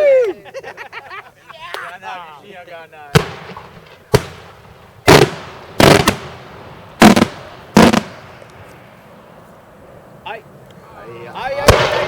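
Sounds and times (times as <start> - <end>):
fireworks bangs with echo: 3.1 - 8.9, 11.5 - 12.0.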